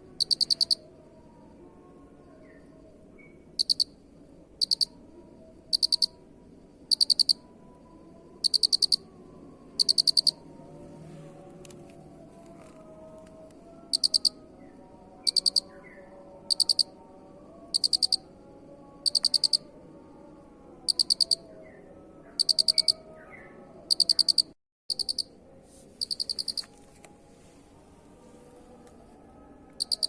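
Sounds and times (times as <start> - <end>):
faint lower insect calls: 0.0 - 10.7, 13.9 - 21.6, 22.3 - 23.1, 23.8 - 25.4, 26.0 - 26.8, 29.8 - 30.0
cricket chirping: 0.0 - 11.0, 13.9 - 14.5, 15.1 - 21.6, 22.3 - 23.1, 23.8 - 25.3, 26.0 - 26.7, 29.8 - 30.0.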